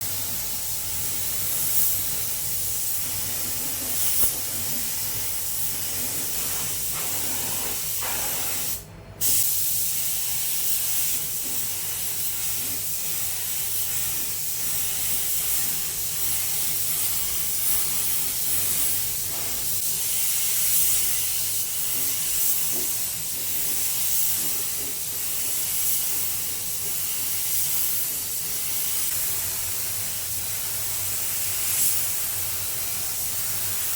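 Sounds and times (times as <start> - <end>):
spray gun hissing: 0.1 - 33.9.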